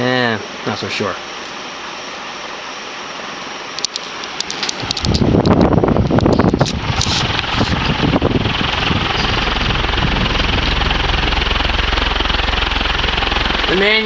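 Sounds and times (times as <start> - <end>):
ceiling fan motor hum: 0.0 - 14.0
rush of air from fan blades: 1.6 - 14.0
fan knocking: 5.1 - 14.0.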